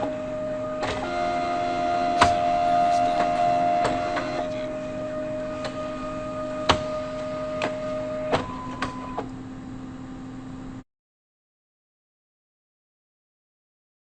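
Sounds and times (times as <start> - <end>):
photocopier humming and whining: 0.0 - 10.8.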